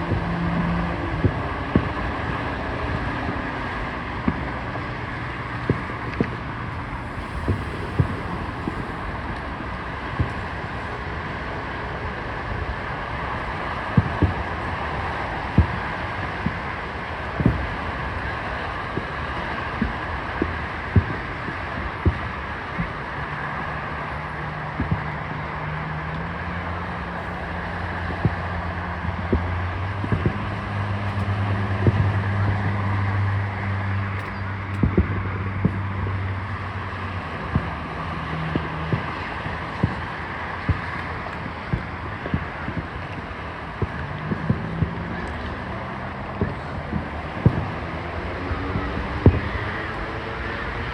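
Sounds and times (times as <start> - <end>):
low steady hum: 0.0 - 16.0
fireworks bangs: 0.1 - 23.2, 26.4 - 50.8.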